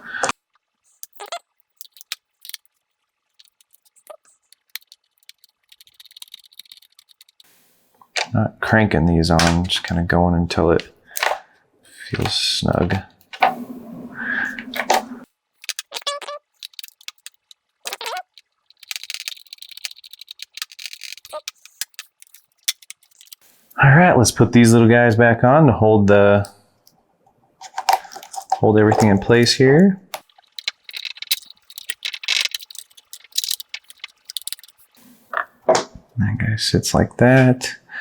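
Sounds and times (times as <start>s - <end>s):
plastic parts clicking: 1.0s - 2.8s, 3.4s - 8.4s, 9.3s - 10.0s, 10.8s - 11.5s, 14.5s - 23.4s, 27.6s - 35.0s
screwdriver ticking: 4.6s - 7.4s, 18.3s - 23.4s, 30.2s - 34.9s
scraping: 12.0s - 23.4s, 27.6s - 35.9s.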